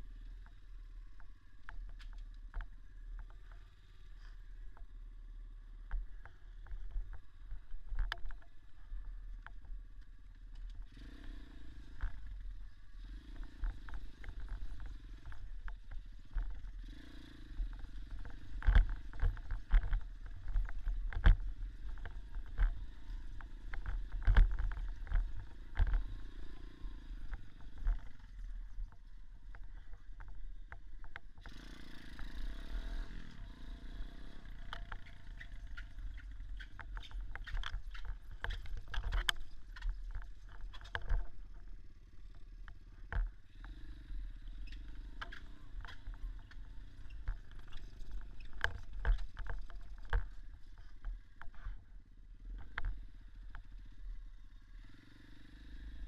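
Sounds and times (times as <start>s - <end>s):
dirt bike engine running: 0.0s - 56.0s
bike knocks and rattles: 5.8s - 32.4s, 34.5s - 51.9s.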